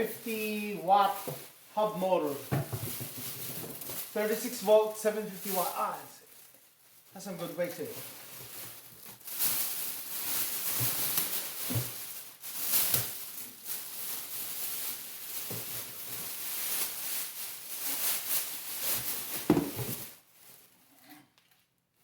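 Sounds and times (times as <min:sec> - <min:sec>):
packaging rustling and crinkling: 0:00.0 - 0:20.8
dull knocks and thumps: 0:02.5 - 0:03.8.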